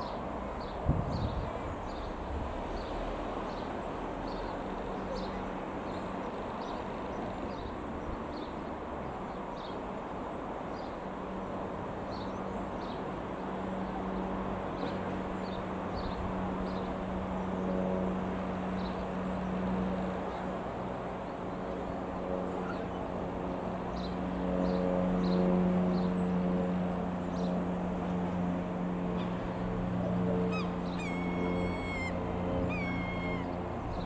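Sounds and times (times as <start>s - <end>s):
small plane engine droning: 0.0s - 34.0s
small birds chirping: 30.6s - 34.0s.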